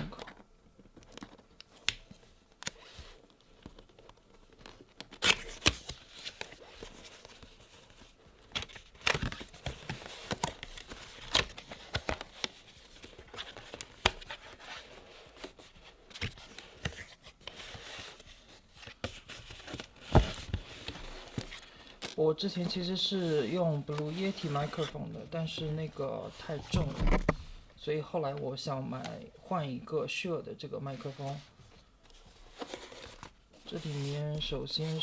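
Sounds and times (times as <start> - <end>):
packaging rustling and clicking: 0.0 - 23.1
cardboard box seal tearing: 5.0 - 6.3.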